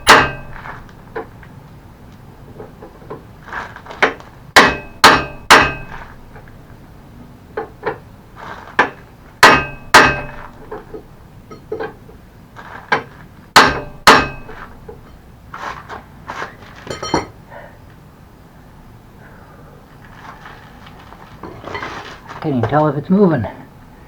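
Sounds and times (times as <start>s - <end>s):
hammer striking steel pin: 0.0s - 0.8s, 4.6s - 6.2s, 9.4s - 10.6s, 13.6s - 15.2s.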